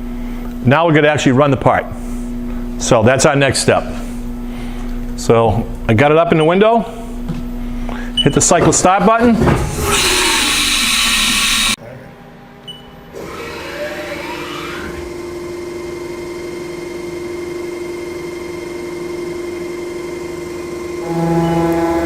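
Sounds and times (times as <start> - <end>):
machine spindle whine and hum: 9.5 - 22.0
loud air hiss: 9.8 - 11.8.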